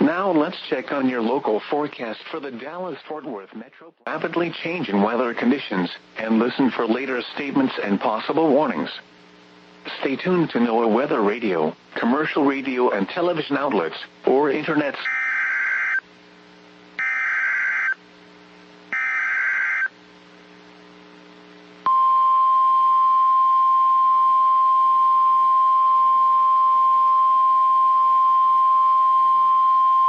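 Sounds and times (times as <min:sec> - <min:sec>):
steady warning alarm tone: 0:15.0 - 0:16.0, 0:17.0 - 0:18.0, 0:18.9 - 0:19.9
warbling data screech: 0:17.0 - 0:18.0, 0:19.0 - 0:19.9.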